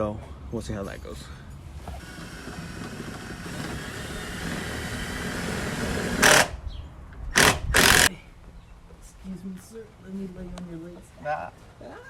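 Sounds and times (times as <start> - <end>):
power drill whirring into plastic: 1.9 - 6.6, 7.4 - 8.1.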